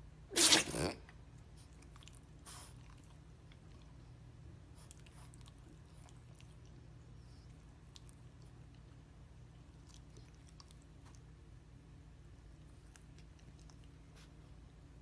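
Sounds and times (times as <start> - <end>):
low steady hum: 0.0 - 15.0
dog mouth smacking and chewing: 1.6 - 4.0, 4.8 - 6.9, 7.7 - 11.4, 12.4 - 14.4.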